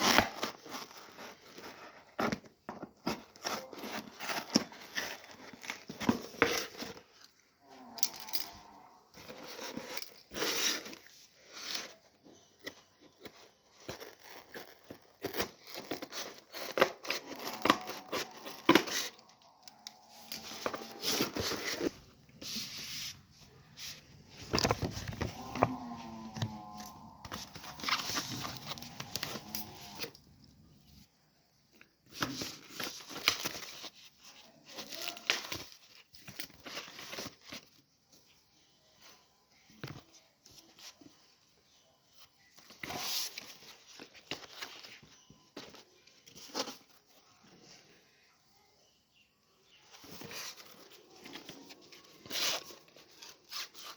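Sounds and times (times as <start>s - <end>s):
packaging tearing and crinkling: 13.8s - 22.1s, 24.4s - 30.2s.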